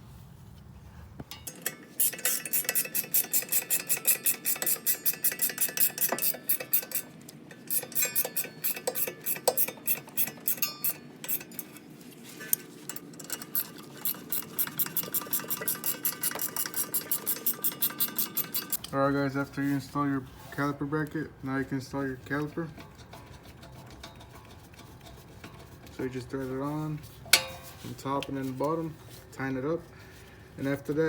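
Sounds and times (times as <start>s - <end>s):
ratchet wrench clicking: 1.3s - 11.8s, 12.5s - 18.9s.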